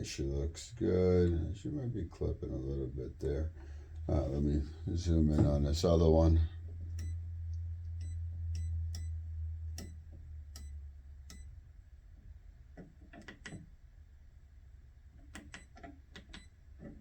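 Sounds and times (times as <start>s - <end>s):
low hum: 0.0s - 12.7s.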